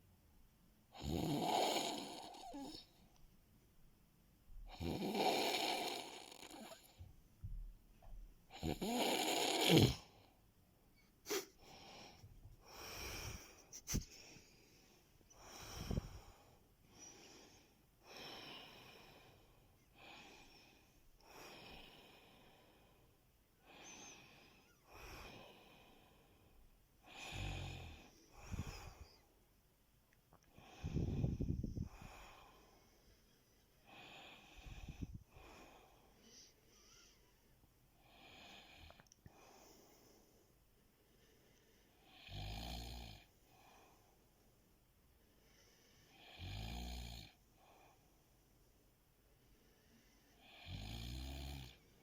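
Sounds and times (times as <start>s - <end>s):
man snoring: 1.0s - 2.8s, 4.7s - 6.9s, 8.5s - 10.2s, 27.1s - 29.0s, 42.1s - 43.3s, 46.2s - 47.4s, 50.4s - 51.8s.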